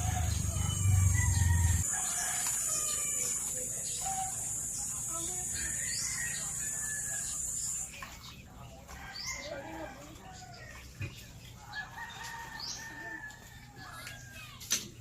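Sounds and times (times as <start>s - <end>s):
rooster crowing: 0.0s - 3.4s.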